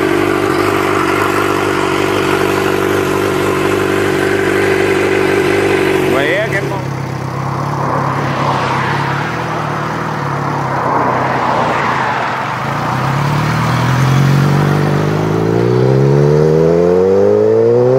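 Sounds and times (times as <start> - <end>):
motorcycle engine running: 0.0 - 17.9.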